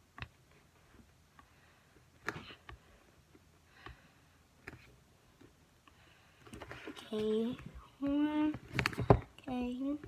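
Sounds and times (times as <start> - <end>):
faint writing taps and clicks: 2.2 - 4.0.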